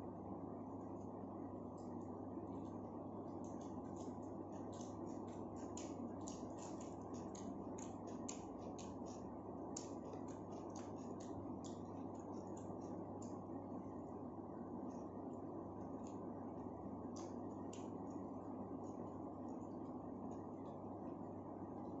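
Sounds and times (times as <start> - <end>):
steady low hum: 0.0 - 22.0
close-miked eating wet clicks: 1.7 - 13.7, 15.8 - 16.3, 16.9 - 20.8.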